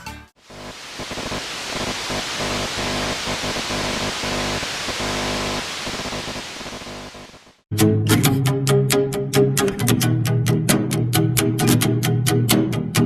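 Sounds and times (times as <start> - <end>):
hiss-like wash of noise: 0.4 - 7.6.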